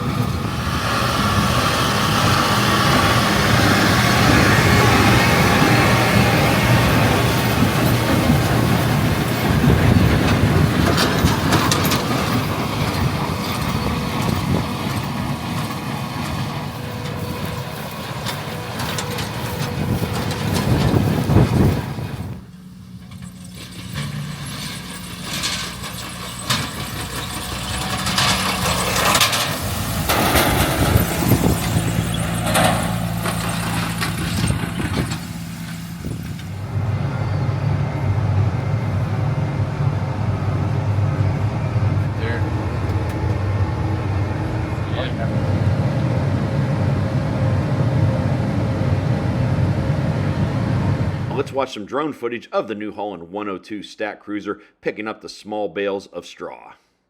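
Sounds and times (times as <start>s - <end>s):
dense mechanical clatter: 0.0s - 46.2s
diesel farm machinery running: 0.0s - 51.6s
metal clanks: 2.5s - 36.6s.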